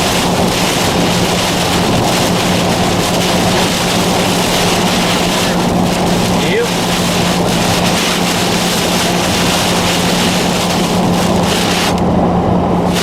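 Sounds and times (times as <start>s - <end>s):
heavy rain and wind: 0.0s - 13.0s
steady low hum: 0.0s - 13.0s.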